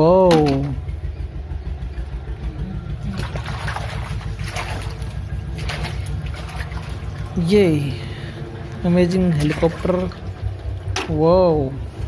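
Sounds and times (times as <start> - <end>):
steady low rumble: 0.0 - 12.0
water splashing and trickling: 2.6 - 12.0.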